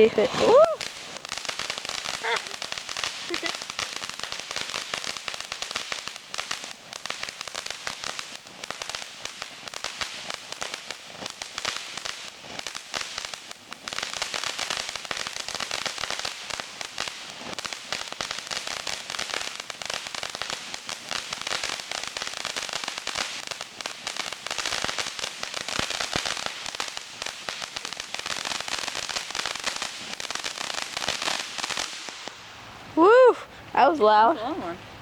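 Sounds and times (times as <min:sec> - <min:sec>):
firework crackles and pops: 0:00.0 - 0:33.8.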